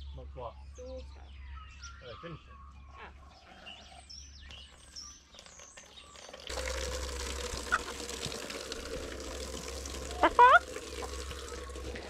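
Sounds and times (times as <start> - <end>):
small birds chirping: 0.0 - 6.5
water running from a tap: 6.2 - 12.0.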